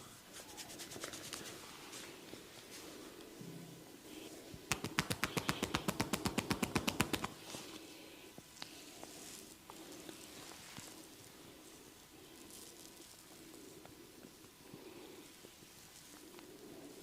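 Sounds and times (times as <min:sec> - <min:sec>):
hands slapping skin: 0:04.7 - 0:07.4
rubbing and light taps: 0:04.7 - 0:07.4.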